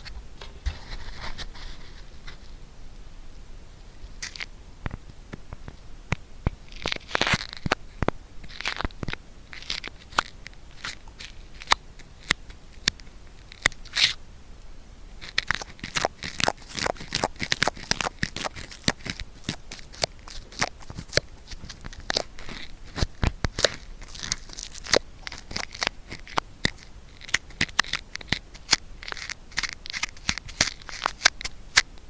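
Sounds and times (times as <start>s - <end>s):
cotton swab crackling in ear: 6.5s - 14.2s, 15.2s - 32.0s
cotton swab scraping: 15.2s - 32.0s.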